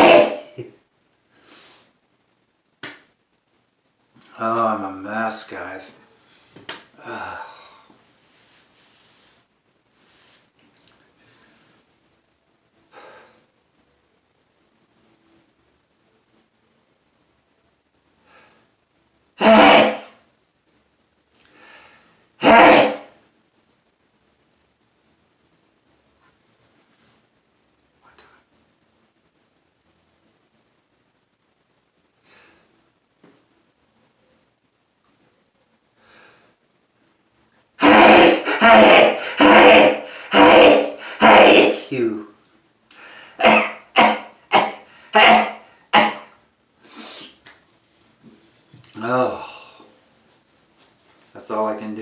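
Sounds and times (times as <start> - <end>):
man sneezing loudly: 0.0 - 0.7, 6.7 - 7.8, 19.4 - 20.2, 22.4 - 23.1, 37.8 - 42.2, 43.0 - 46.3
faint in-breath: 1.3 - 2.0, 6.2 - 9.4, 12.9 - 13.5, 21.5 - 22.3, 36.0 - 36.6, 42.9 - 43.4, 49.4 - 50.2.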